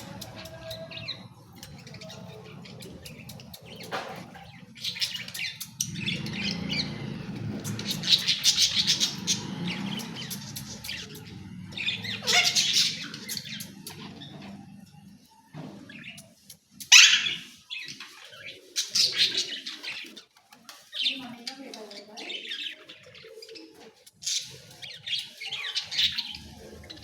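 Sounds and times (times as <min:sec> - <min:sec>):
parrot chattering and squawking: 0:01.6 - 0:14.6, 0:16.8 - 0:17.6.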